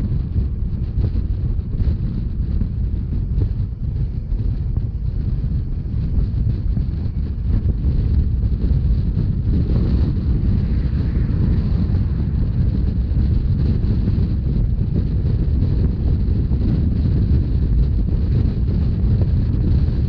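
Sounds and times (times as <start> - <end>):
train rumbling along: 0.0 - 20.0
wind buffeting microphone: 0.0 - 20.0.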